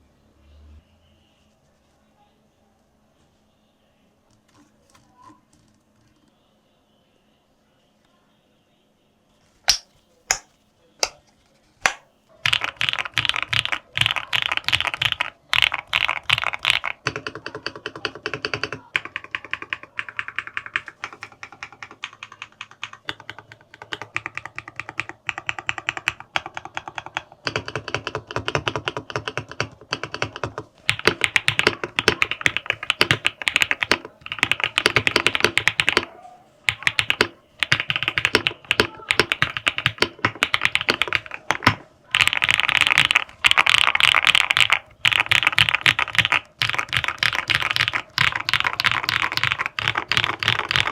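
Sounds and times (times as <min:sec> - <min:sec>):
mechanical keyboard typing: 0:11.8 - 0:36.1, 0:36.7 - 0:50.9.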